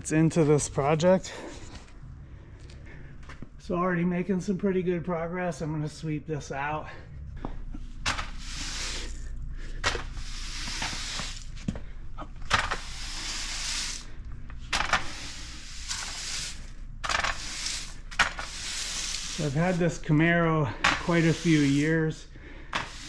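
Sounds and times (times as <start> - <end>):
broom sweeping floor: 8.0 - 23.0.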